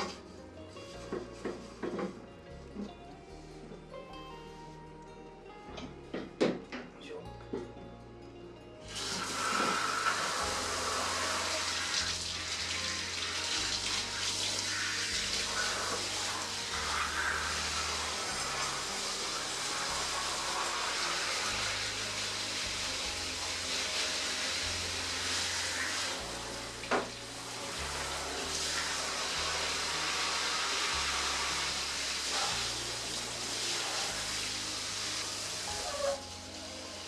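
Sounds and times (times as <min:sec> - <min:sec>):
soft background music: 0:00.0 - 0:37.0
running water splashing: 0:08.9 - 0:37.0.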